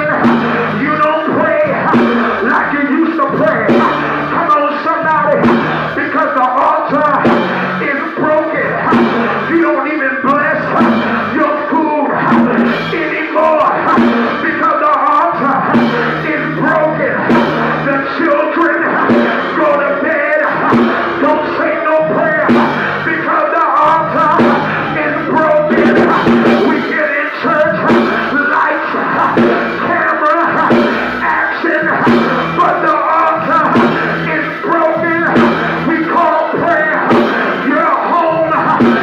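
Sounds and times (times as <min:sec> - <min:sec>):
live church band music: 0:00.0 - 0:39.0
voices singing along: 0:00.0 - 0:39.0.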